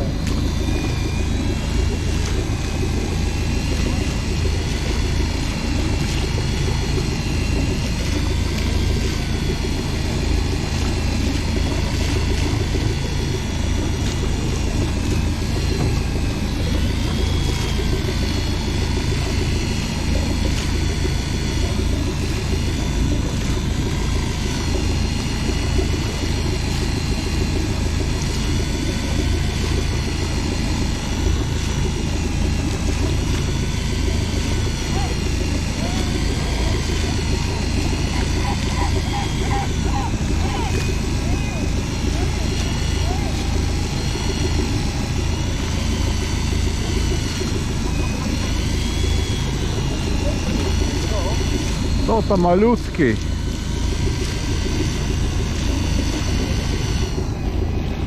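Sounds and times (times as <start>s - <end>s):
boat engine running: 0.0s - 58.0s.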